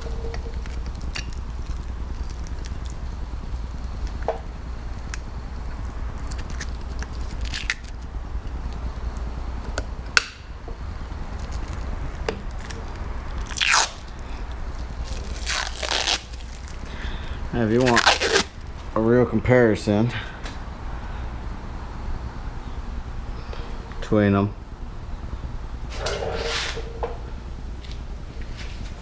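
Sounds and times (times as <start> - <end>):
steady low hum: 0.0 - 29.0
rustling scrape: 25.9 - 27.0.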